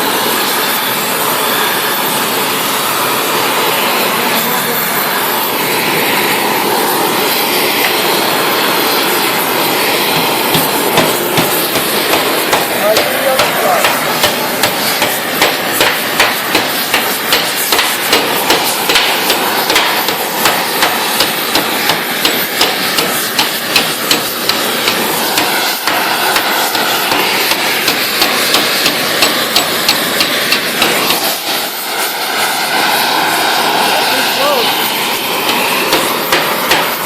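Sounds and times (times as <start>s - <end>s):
heating torch roaring: 0.0s - 37.0s
hammer striking hot steel: 3.1s - 37.0s.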